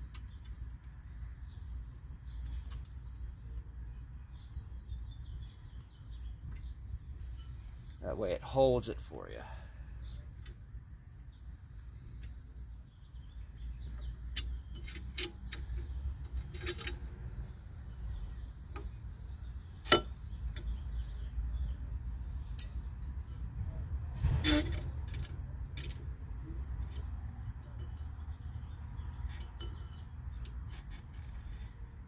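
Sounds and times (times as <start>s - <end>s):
metal clicks and clinks: 14.3s - 17.1s, 22.4s - 23.2s, 24.5s - 26.1s, 26.7s - 28.4s, 29.1s - 31.0s.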